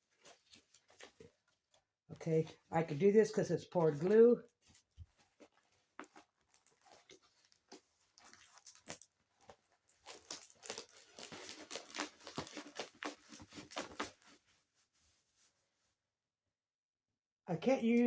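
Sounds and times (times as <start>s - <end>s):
packaging tearing and crinkling: 6.0s - 14.4s.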